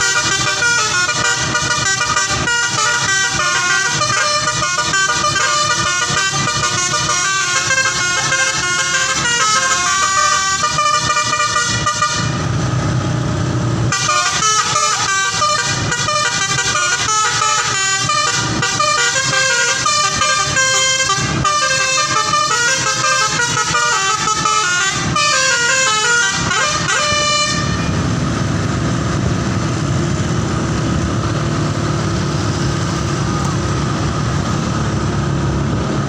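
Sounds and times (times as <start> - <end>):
multi-tone air horn melody: 0.0 - 12.5, 13.9 - 28.2
bus engine running: 0.0 - 36.0.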